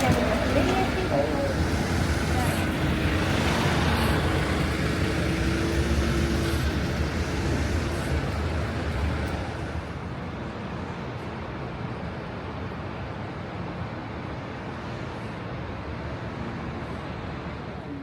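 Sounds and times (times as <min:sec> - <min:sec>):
subway train rumbling: 0:00.0 - 0:18.0.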